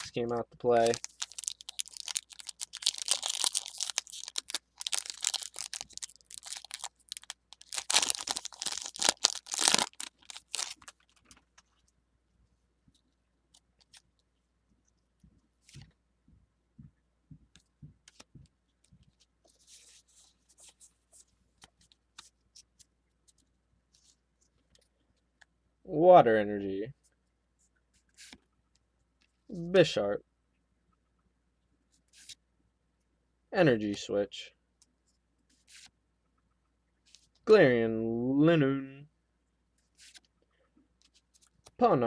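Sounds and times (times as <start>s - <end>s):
foil wrapper crinkling and tearing: 0.8s - 11.3s.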